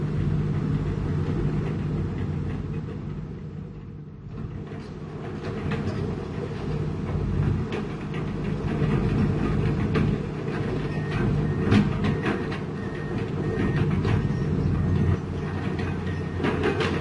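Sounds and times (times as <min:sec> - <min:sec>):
diesel engine running: 0:00.0 - 0:17.0
metallic clanks and knocks: 0:13.5 - 0:17.0.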